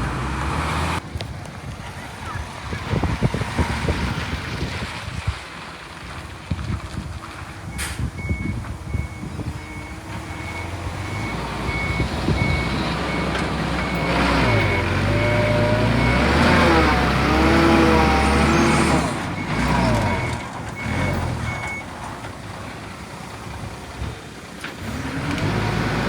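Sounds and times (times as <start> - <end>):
diesel engine: 0.0 - 26.0
reversing alarm beeping: 8.2 - 21.9.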